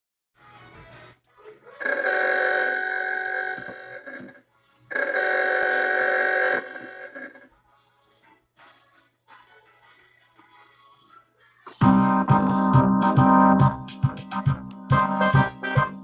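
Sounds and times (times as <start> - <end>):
goal horn blasts: 11.8 - 16.0.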